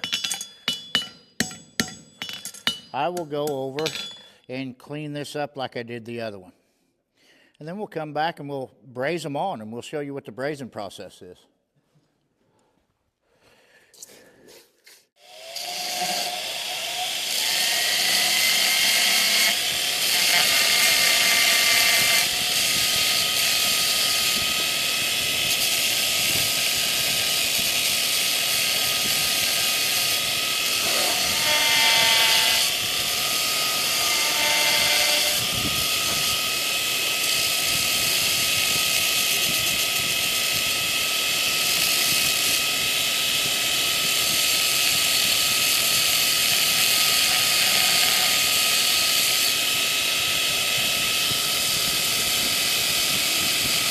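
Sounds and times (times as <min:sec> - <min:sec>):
power grinder whining: 0:15.2 - 0:53.9.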